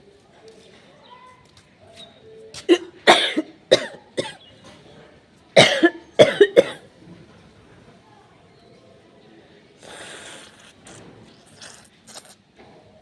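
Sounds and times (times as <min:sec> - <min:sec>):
person sneezing: 0:02.7 - 0:03.9.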